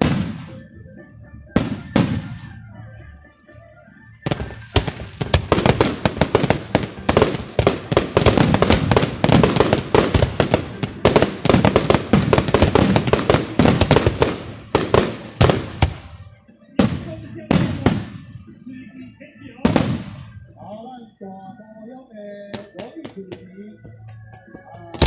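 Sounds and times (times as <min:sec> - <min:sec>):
fireworks bangs and crackles: 0:00.0 - 0:00.8, 0:01.5 - 0:02.7, 0:04.2 - 0:18.4, 0:19.6 - 0:20.5.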